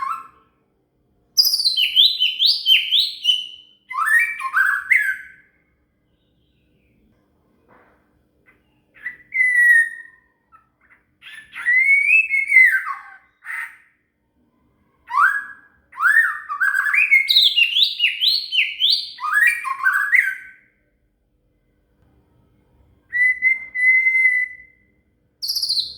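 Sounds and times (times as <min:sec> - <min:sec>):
bird whistling song: 0:00.0 - 0:00.5, 0:01.4 - 0:06.9, 0:08.5 - 0:14.0, 0:15.0 - 0:20.8, 0:23.1 - 0:25.9.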